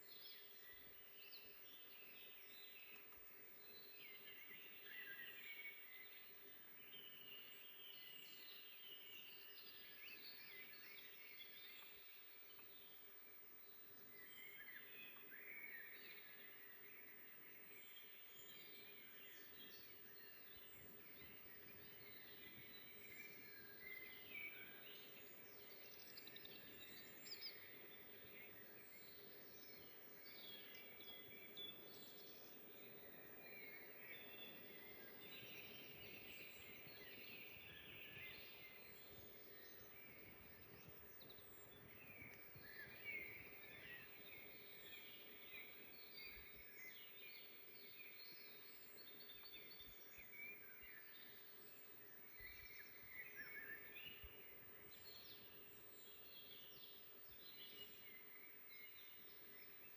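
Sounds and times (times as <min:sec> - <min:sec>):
songbirds chirping and singing: 0:00.0 - 0:59.9.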